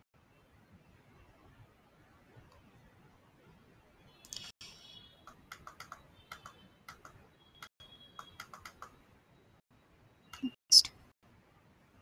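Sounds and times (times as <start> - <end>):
faint keyboard typing: 5.2 - 7.2, 8.2 - 9.0.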